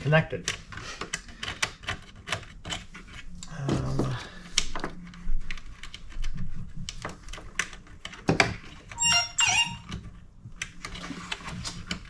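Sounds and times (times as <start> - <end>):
high squeak sliding down: 9.0 - 9.9.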